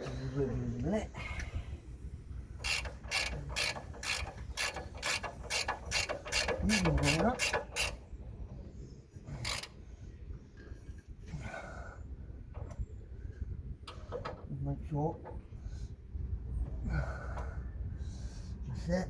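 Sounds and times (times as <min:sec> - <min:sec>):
ratchet wrench clicking: 0:02.6 - 0:08.0, 0:09.4 - 0:09.7.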